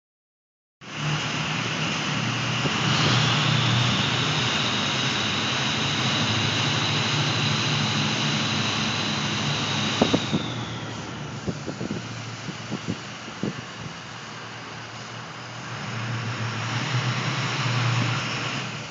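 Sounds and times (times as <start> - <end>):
diesel engine running: 0.8 - 18.9
turbocharger whistle: 0.9 - 11.4.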